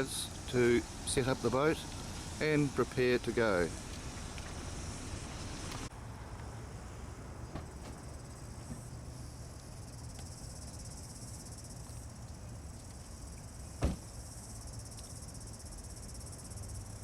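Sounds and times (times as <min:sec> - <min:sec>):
insects chirring: 0:00.0 - 0:17.0
single thump: 0:13.8 - 0:14.1.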